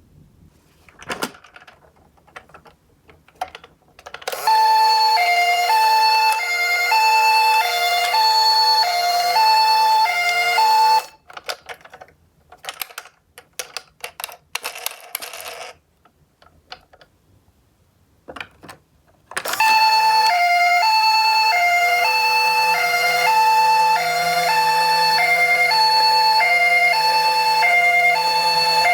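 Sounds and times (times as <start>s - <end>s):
two-tone ambulance siren: 4.3s - 11.2s, 19.5s - 28.9s
toy cars rattling down a slope: 10.2s - 15.8s.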